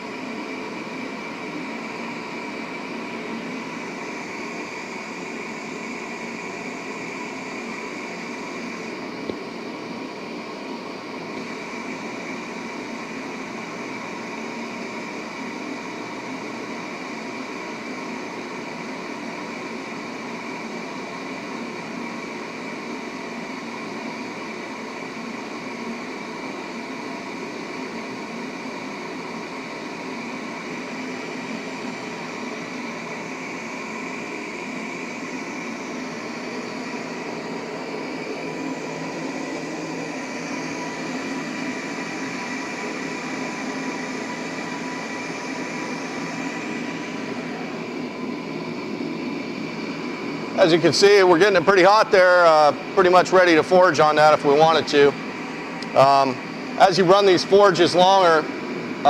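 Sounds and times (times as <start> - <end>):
forge burner rushing: 0.0 - 59.0.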